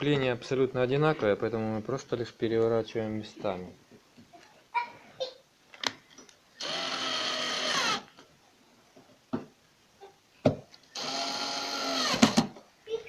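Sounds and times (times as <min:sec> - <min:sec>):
cordless drill whirring: 0:06.6 - 0:08.1, 0:11.0 - 0:12.5.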